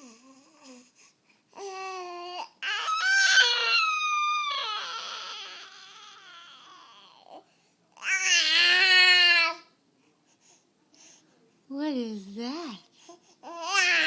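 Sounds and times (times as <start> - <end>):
baby crying: 1.6 - 7.4, 8.0 - 9.7, 13.4 - 14.0.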